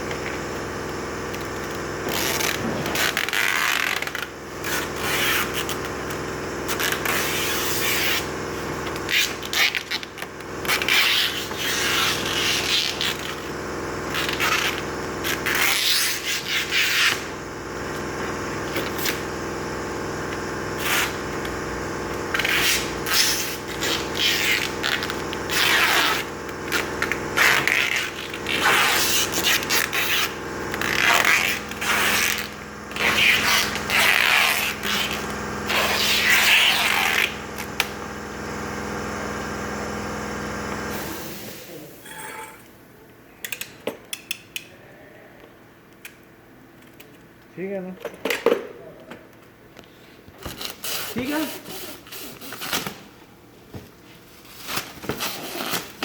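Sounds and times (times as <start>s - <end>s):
steady low hum: 0.0s - 43.8s.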